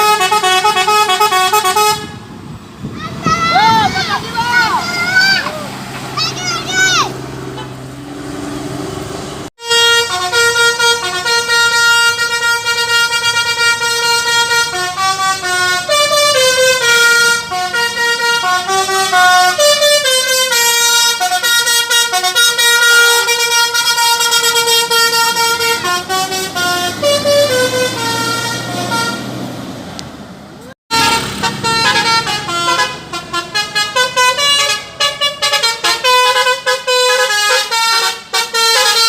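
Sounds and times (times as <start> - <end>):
multi-tone bus air horn tune: 0.0 - 2.6, 9.6 - 29.4, 30.9 - 39.0.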